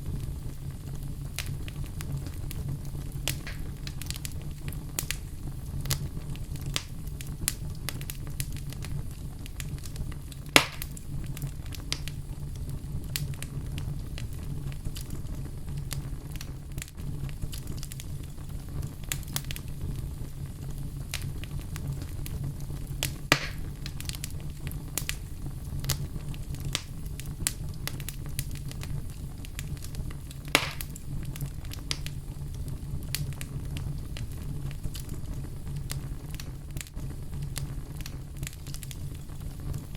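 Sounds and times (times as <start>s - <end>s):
loud fire pops: 0.0s - 39.9s
low rumble of flames: 0.0s - 39.9s
wood fire crackling: 0.0s - 39.9s.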